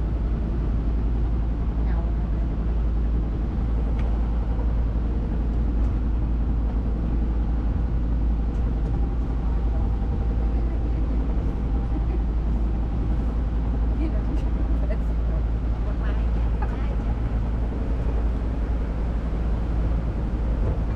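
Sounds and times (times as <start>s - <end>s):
boat engine running: 0.0s - 20.9s.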